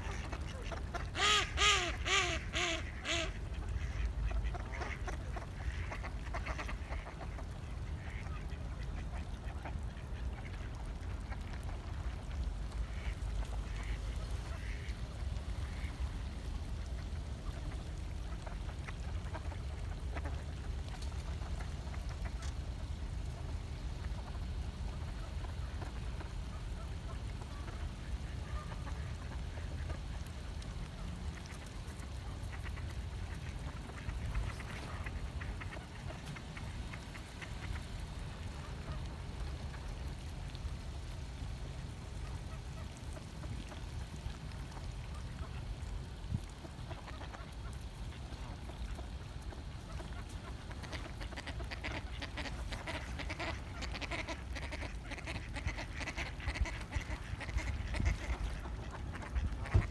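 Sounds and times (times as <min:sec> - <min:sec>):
duck calling: 0:00.0 - 0:07.2, 0:49.9 - 0:59.9
steady low rumble: 0:02.8 - 0:59.9.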